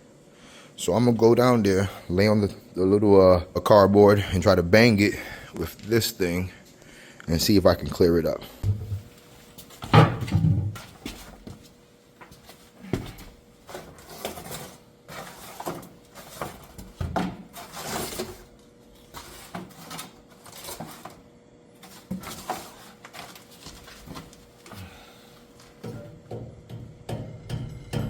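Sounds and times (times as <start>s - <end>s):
faint steady hum: 0.0s - 28.0s
tool banging on metal drain: 9.8s - 10.8s, 25.8s - 28.0s.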